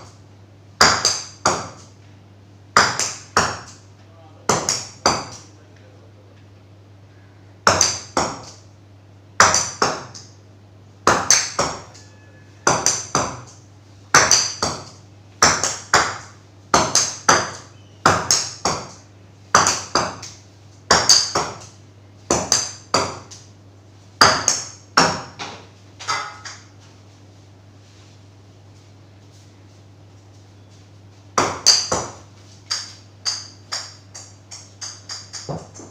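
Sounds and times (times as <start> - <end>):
ball bouncing on hard surface: 9.4 - 10.4, 11.0 - 23.4, 24.2 - 26.7, 31.4 - 35.9.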